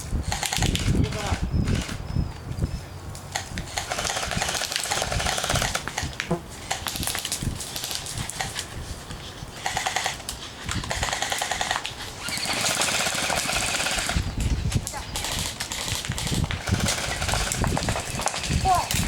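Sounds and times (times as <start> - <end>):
airsoft guns firing full-auto: 3.8 - 5.8, 10.9 - 14.2, 15.2 - 18.5.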